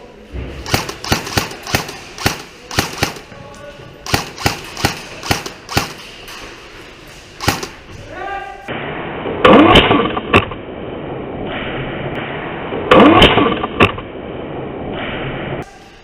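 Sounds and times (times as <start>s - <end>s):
airsoft gun shots: 0.6s - 3.3s, 4.0s - 6.1s, 7.4s - 7.8s, 9.4s - 10.6s, 12.2s - 14.0s.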